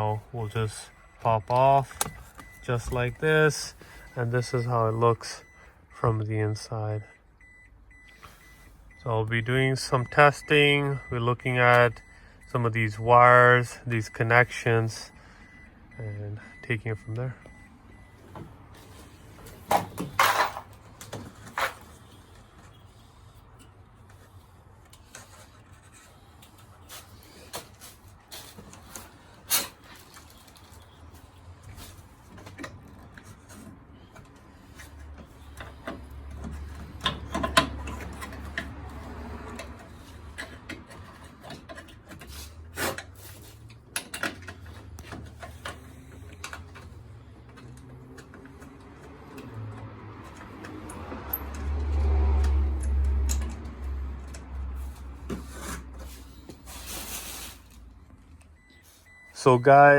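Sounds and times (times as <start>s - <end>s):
tools clicking and knocking: 35.6s - 38.9s, 39.5s - 46.9s.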